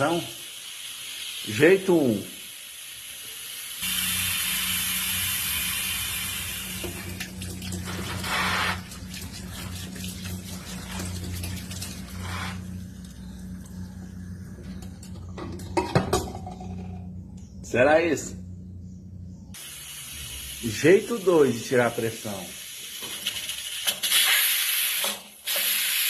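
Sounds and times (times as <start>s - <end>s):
pressure cooker steam hissing: 0.0s - 7.1s, 19.6s - 26.0s
steady low hum: 3.8s - 22.2s.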